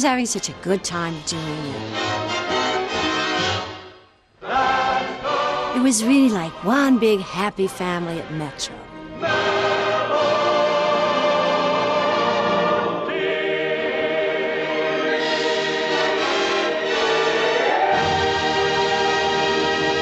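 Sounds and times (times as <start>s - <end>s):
orchestra and choir performing: 1.8s - 6.8s, 9.1s - 20.0s.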